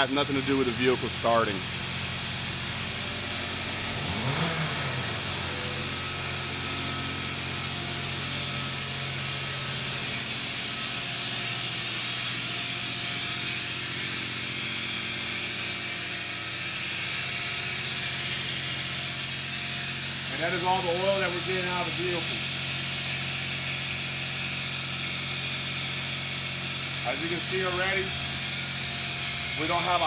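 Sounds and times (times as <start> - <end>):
oil extractor hissing: 0.0 - 12.6
steady low hum: 0.0 - 13.0.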